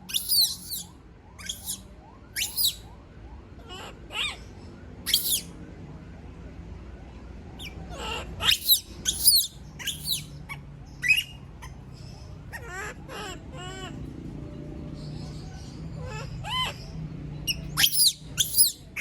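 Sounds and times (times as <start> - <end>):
monkey screaming: 0.0 - 1.8, 2.4 - 2.8, 3.7 - 4.4, 5.1 - 5.5, 7.6 - 11.8, 12.5 - 14.0, 16.0 - 16.9, 17.5 - 19.0.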